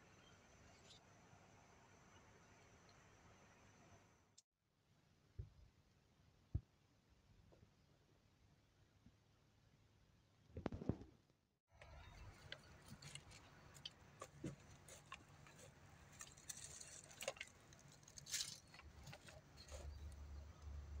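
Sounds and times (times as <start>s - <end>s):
cat moving with clicks and rustles: 11.9s - 20.6s.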